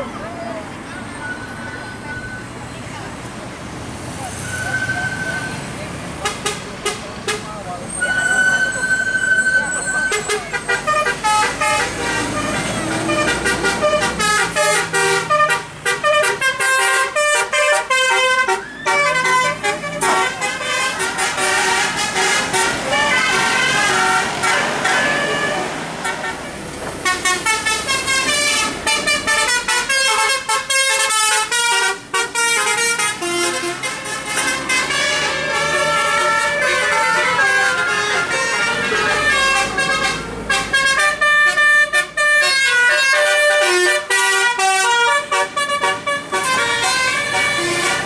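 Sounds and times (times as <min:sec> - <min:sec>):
multi-tone bus horn melody: 0:06.2 - 0:48.0.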